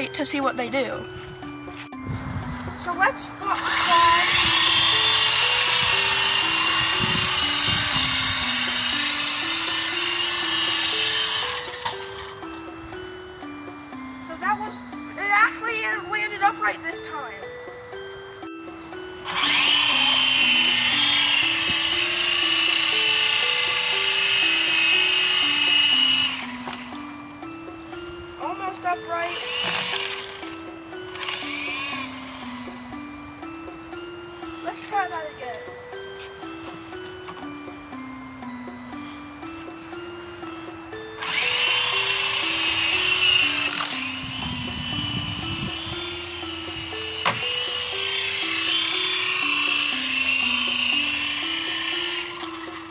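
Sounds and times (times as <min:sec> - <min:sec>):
background music: 0:00.0 - 0:52.9
toy helicopter drone whine: 0:03.4 - 0:13.4, 0:18.6 - 0:34.0, 0:40.6 - 0:52.9.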